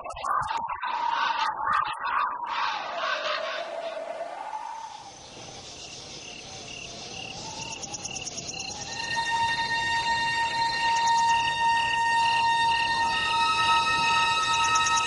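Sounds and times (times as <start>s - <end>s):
wind whistling: 0.0s - 15.0s
insect chirps: 4.8s - 15.0s.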